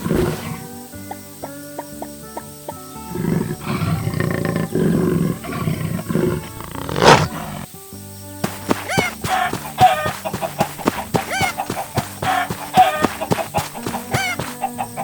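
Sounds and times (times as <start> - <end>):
cartoon background music: 8.2 - 15.0
quick high chirps: 8.4 - 15.0.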